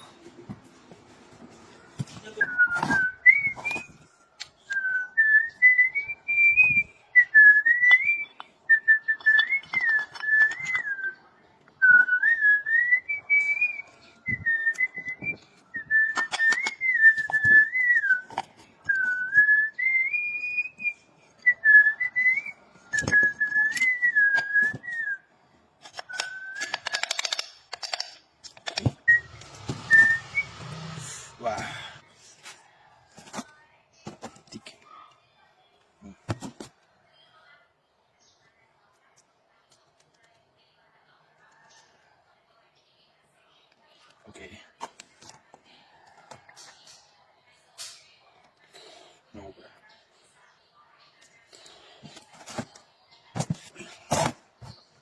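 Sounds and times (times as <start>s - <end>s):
person whistling a tune: 2.4s - 4.0s.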